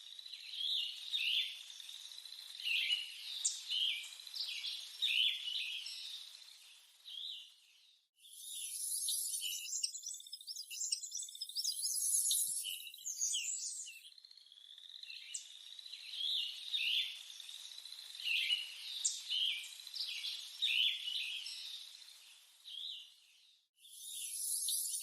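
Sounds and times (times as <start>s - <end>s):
high insect-like tone: 8.2s - 13.8s, 23.8s - 25.0s.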